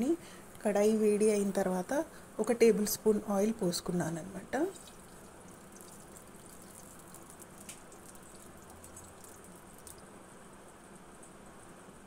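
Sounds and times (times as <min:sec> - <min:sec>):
low hiss: 0:00.0 - 0:12.0
oil crackling in a pan: 0:04.6 - 0:11.4.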